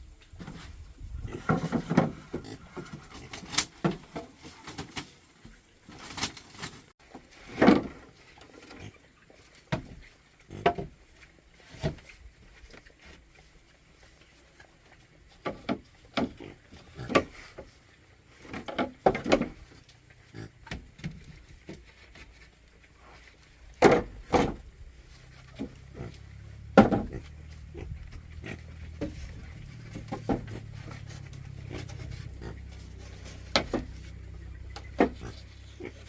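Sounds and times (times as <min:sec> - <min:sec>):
wood knocking and clattering: 0:18.4 - 0:19.8, 0:23.7 - 0:24.7, 0:26.6 - 0:27.4, 0:28.8 - 0:32.8, 0:33.4 - 0:35.4.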